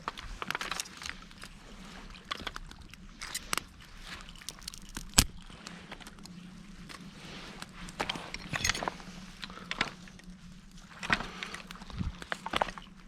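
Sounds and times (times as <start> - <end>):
dry twigs crackling and snapping: 2.2 - 6.3.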